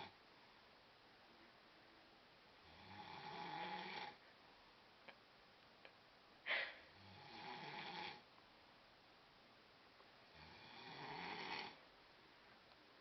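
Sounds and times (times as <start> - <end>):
person snoring: 2.6 - 4.2, 6.5 - 8.2, 10.3 - 11.8.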